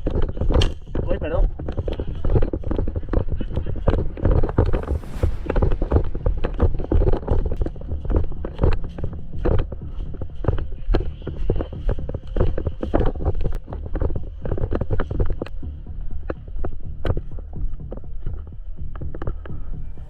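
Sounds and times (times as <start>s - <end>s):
sharp clicks and knocks: 0.0s - 5.3s
low rumble: 0.0s - 20.0s.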